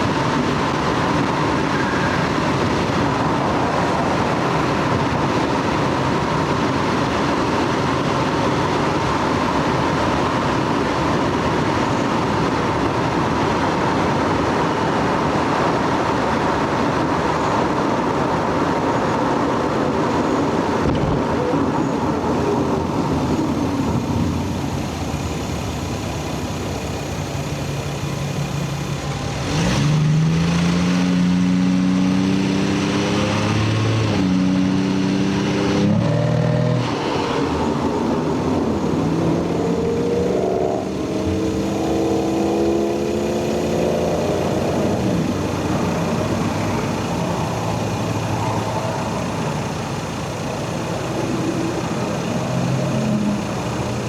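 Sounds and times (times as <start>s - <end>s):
car engine and tyre drone: 0.0s - 54.0s.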